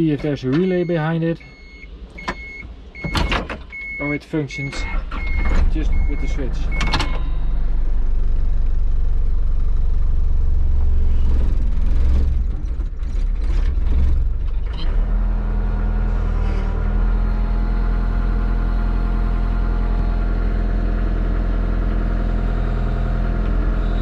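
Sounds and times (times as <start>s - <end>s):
diesel engine idling: 15.1s - 24.0s.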